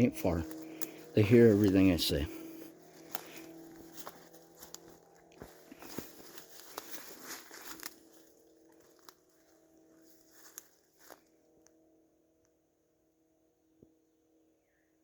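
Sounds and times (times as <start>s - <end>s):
dry leaves and twigs crunching: 0.0s - 11.4s.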